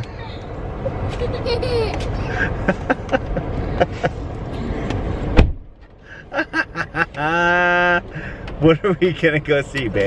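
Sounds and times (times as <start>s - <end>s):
road rumble inside car: 0.0s - 10.0s
sharp thump: 5.3s - 5.7s.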